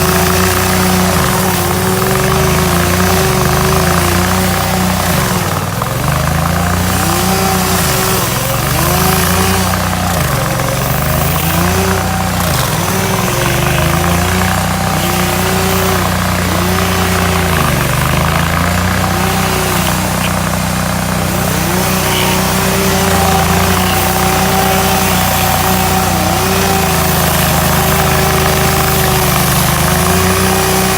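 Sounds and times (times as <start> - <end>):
stump grinder engine grinding: 0.0 - 30.9.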